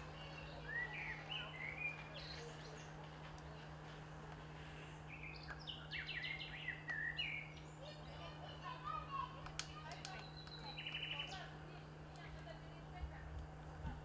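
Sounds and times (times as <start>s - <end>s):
birds singing: 0.0s - 11.8s
steady low hum: 0.0s - 14.0s.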